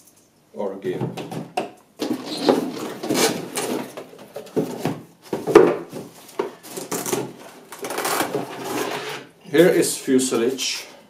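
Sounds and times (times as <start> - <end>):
rubbing and scraping of parts: 2.0 - 9.4.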